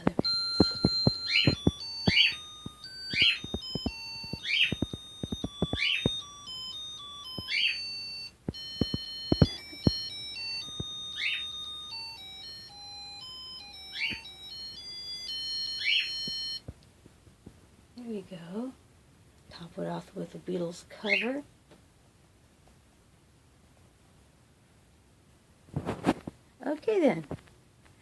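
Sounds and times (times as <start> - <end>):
beeping electronic tune: 0.0 - 16.6.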